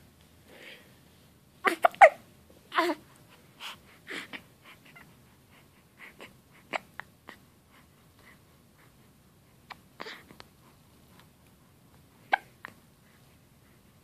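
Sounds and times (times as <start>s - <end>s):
baby hiccuping: 1.6s - 3.0s, 12.3s - 12.6s
baby whimpering: 1.6s - 5.1s, 12.2s - 12.8s.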